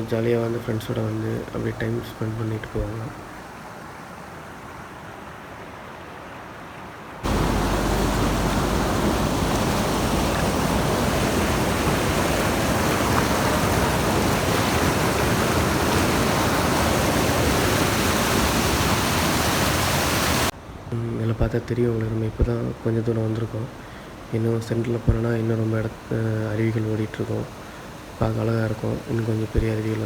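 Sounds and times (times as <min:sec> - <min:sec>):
water rushing over rocks: 0:07.2 - 0:20.5, 0:23.9 - 0:30.0.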